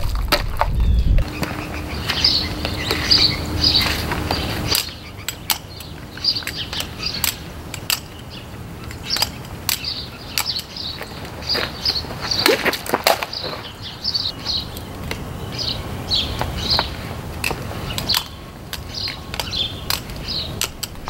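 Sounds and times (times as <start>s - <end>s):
butterfly knife metallic clicks: 8.8s - 10.8s.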